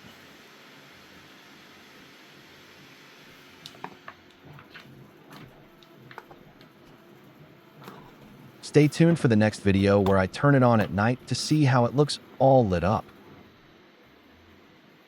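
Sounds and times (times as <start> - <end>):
faint steady hiss: 5.6 - 15.0.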